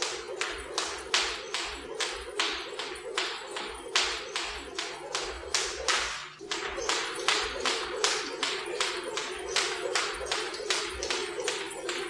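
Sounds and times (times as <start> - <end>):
jump rope slapping the floor: 0.0 - 12.0.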